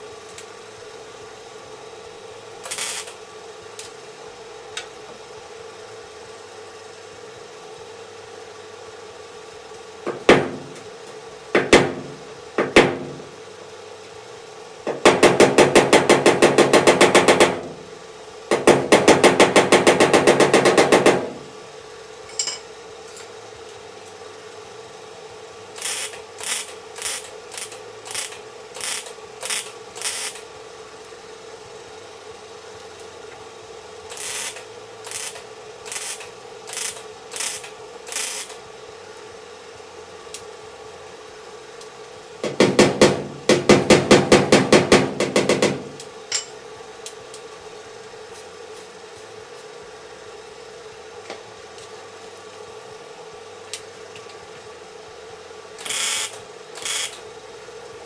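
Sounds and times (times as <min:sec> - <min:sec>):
rapid hammering on metal: 0:10.1 - 0:10.8, 0:11.6 - 0:13.3, 0:14.9 - 0:17.8, 0:18.5 - 0:21.5, 0:42.4 - 0:46.0
hammer on sheet metal: 0:18.5 - 0:21.4, 0:42.4 - 0:46.0.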